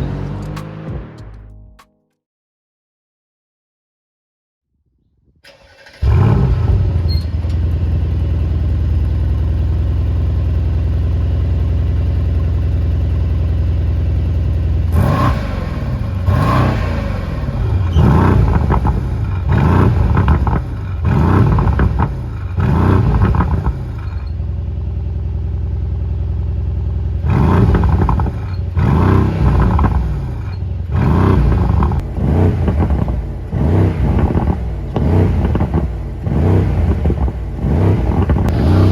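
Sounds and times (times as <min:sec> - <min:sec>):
car engine revving: 0:00.0 - 0:01.3, 0:05.5 - 0:08.6, 0:13.0 - 0:24.3, 0:27.2 - 0:38.9.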